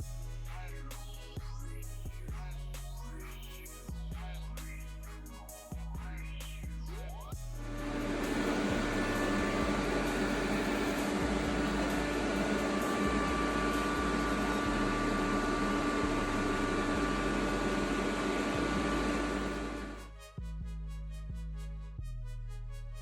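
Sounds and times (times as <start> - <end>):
welding arc hissing: 7.6 - 20.0.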